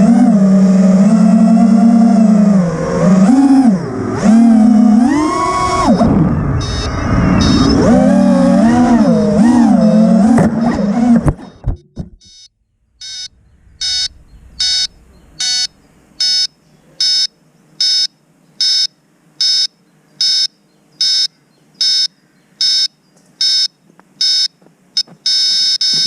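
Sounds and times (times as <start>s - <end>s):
high-pitched buzzer beeps: 6.0s - 7.9s, 12.1s - 26.0s.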